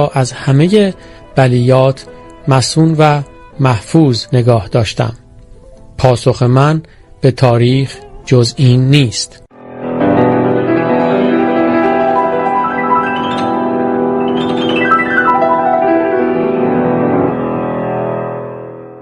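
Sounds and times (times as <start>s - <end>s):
slow piano music: 0.0s - 19.0s.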